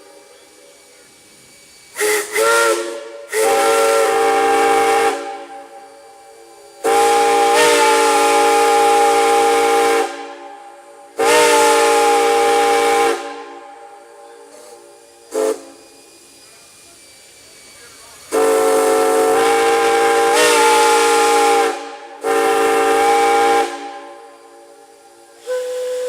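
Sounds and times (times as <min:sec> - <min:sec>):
steam whistle blasts: 0:00.0 - 0:26.0.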